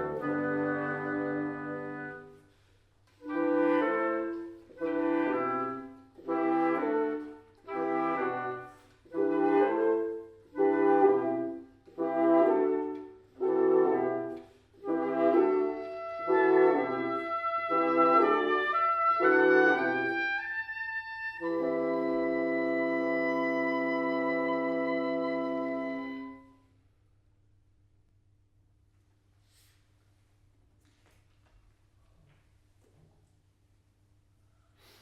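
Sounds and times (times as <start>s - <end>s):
woodwinds and french horn playing: 0.0s - 26.7s.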